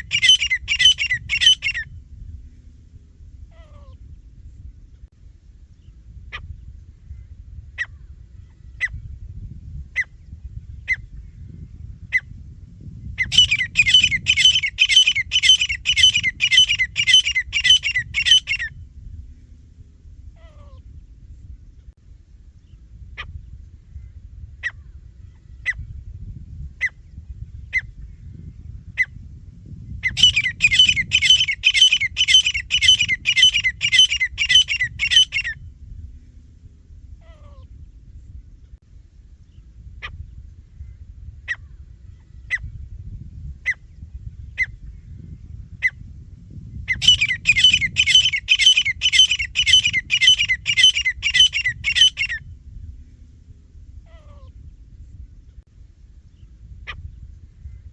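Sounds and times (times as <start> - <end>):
francolin calling: 0.0 - 1.8, 13.2 - 18.7, 30.0 - 35.6, 46.9 - 52.4
low background rumble: 0.0 - 57.9.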